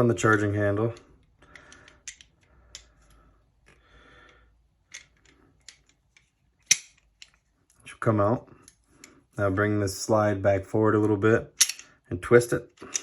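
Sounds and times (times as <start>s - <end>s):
small metal clicks: 0.2s - 3.8s, 4.8s - 7.8s, 12.8s - 13.0s.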